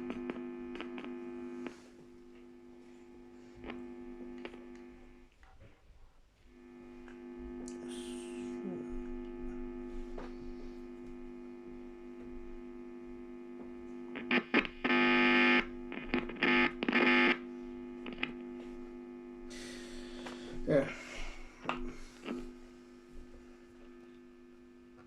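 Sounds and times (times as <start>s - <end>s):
guitar amplifier hum and buzz: 0.0s - 5.4s, 6.4s - 25.0s
harsh buzz bursts: 14.1s - 20.6s.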